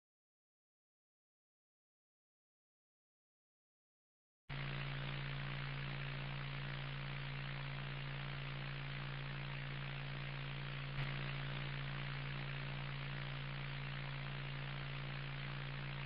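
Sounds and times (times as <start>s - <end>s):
low electrical hum: 4.5s - 16.0s
steady static hiss: 4.5s - 16.0s.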